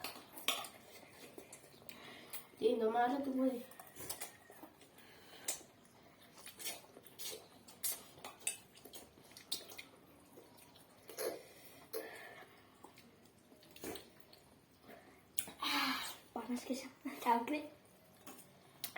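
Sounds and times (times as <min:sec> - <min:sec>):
wet mouth sounds eating noodles: 0:03.6 - 0:16.3.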